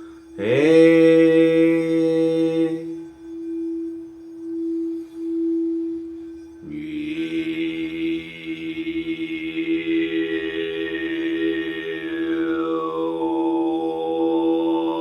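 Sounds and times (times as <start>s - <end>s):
overtone singing: 0.0s - 4.0s, 6.6s - 15.0s
crystal singing bowl ringing: 0.0s - 15.0s.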